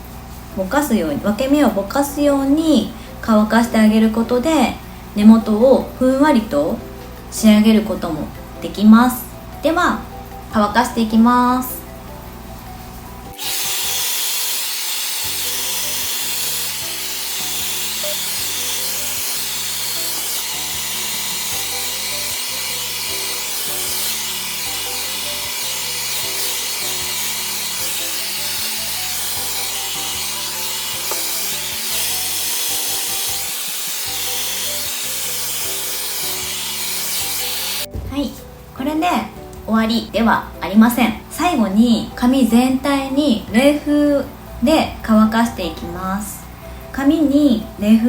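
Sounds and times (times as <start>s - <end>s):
background music: 0.0s - 48.0s
hair dryer running: 13.3s - 37.9s.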